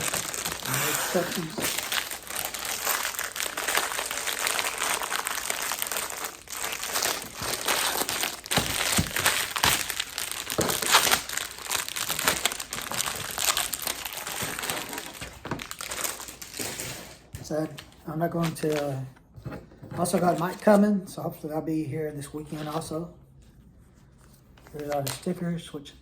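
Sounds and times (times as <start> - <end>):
packaging crinkling and rustling: 0.0 - 19.1, 24.3 - 25.4.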